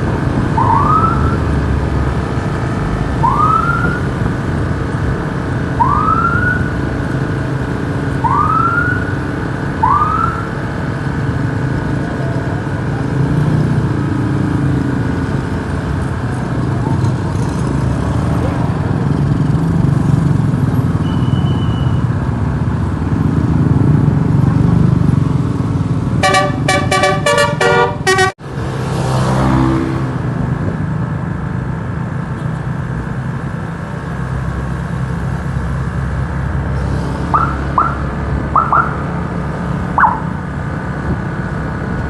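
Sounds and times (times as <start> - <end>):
bus engine and road rumble: 0.0 - 42.0
multi-tone bus horn melody: 26.2 - 28.4.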